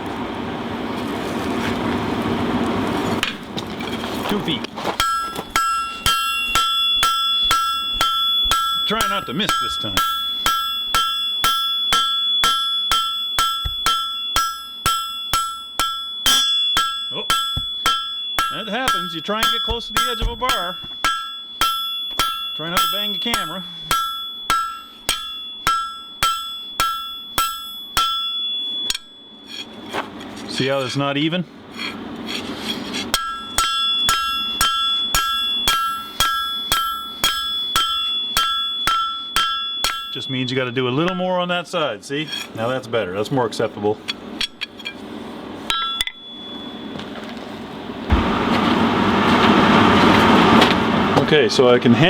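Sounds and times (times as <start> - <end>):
hammer striking steel on anvil: 5.0 - 31.0, 31.8 - 41.4, 44.0 - 47.0.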